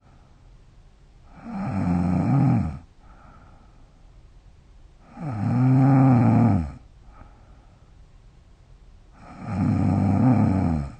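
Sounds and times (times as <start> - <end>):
woman snoring: 1.3 - 2.9, 5.0 - 6.8, 9.2 - 10.9.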